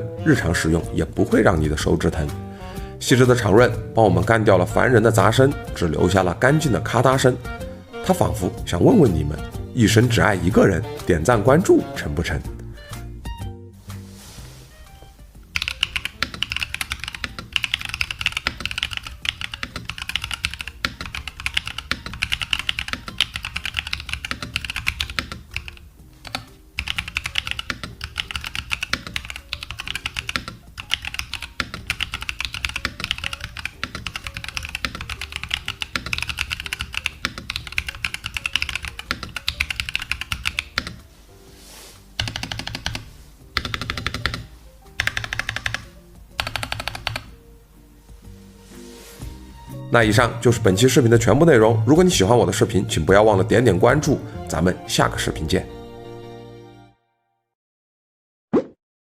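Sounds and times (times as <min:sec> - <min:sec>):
background music: 0:00.0 - 0:57.6
mechanical keyboard typing: 0:15.5 - 0:41.0, 0:42.2 - 0:47.4.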